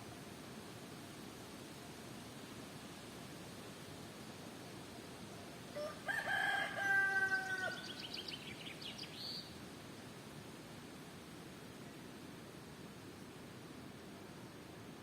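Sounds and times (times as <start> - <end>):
wind hiss: 0.0 - 15.0
rooster crowing: 5.7 - 8.0
songbird trill: 6.8 - 9.6.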